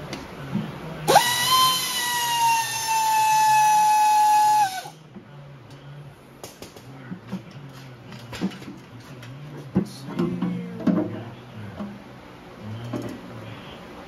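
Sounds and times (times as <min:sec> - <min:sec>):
power tool motor whine: 0:01.1 - 0:04.9.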